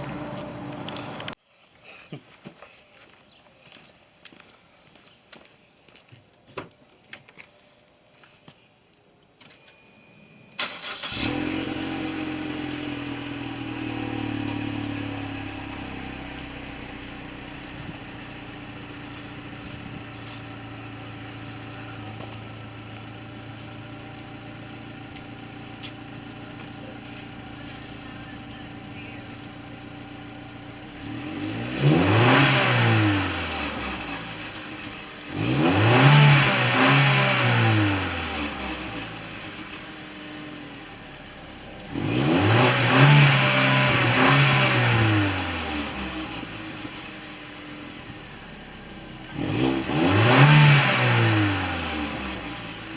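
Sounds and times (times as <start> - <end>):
car engine starting and idling: 0.0 - 1.4, 10.2 - 52.9
car engine revving: 10.6 - 47.8, 49.1 - 52.9.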